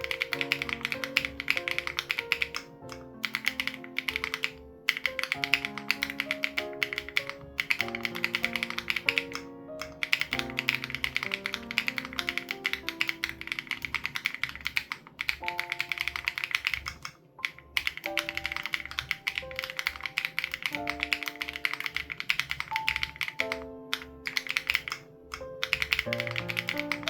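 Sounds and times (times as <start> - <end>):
background music with soft beat: 0.0 - 14.4
fast typing on mechanical keyboard: 0.0 - 27.0.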